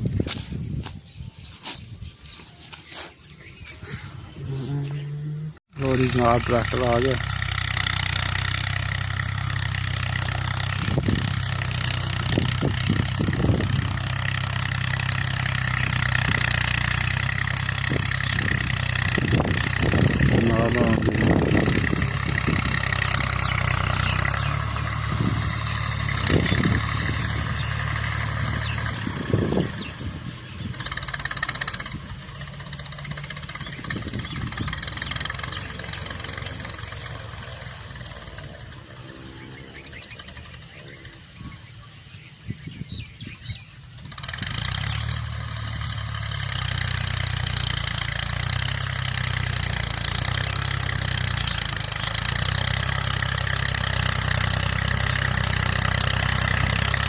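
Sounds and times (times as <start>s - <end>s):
tractor engine idling: 3.2s - 57.0s
rapid clatter: 30.7s - 38.8s, 44.1s - 45.3s.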